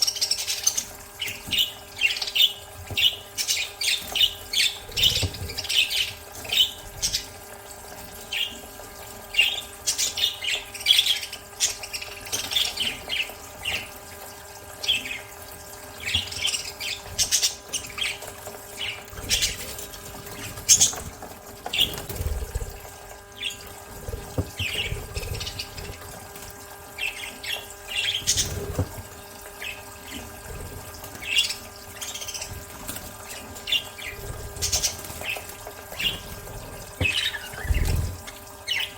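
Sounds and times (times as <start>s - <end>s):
wings flapping: 16.5s - 26.6s, 28.1s - 29.2s, 34.0s - 38.5s
budgerigars chirping: 33.3s - 38.9s.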